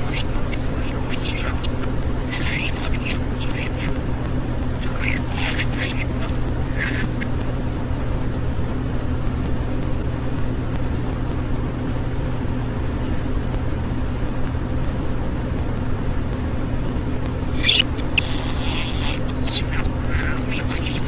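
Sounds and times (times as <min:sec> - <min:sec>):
low hum: 0:00.0 - 0:21.0.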